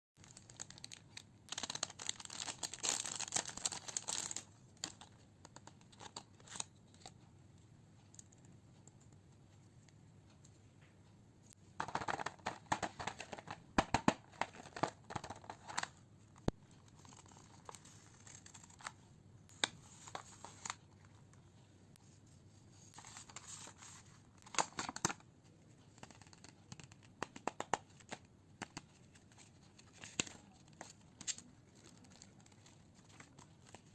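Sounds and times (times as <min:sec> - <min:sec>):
packaging tearing and crinkling: 0:00.2 - 0:04.5.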